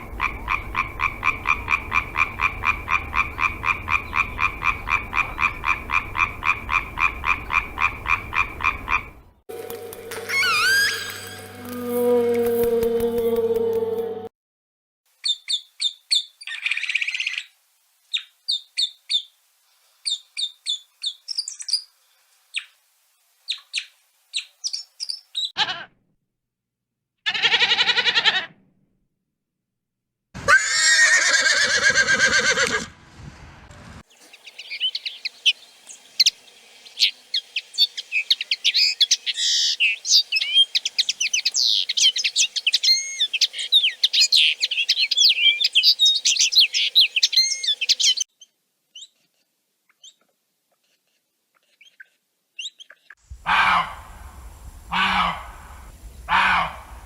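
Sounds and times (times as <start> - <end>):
loud animal call: 0.0 - 9.2, 10.2 - 14.3, 27.2 - 28.6, 30.4 - 32.9, 53.4 - 54.3, 54.9 - 57.0
chorus of birds twittering: 0.0 - 9.4, 34.1 - 48.3
falling animal call: 10.1 - 14.3, 27.2 - 28.6, 30.4 - 32.9, 53.3 - 57.0
wavering animal call: 10.2 - 14.3, 54.9 - 57.0
short high bird chirps: 10.3 - 11.6.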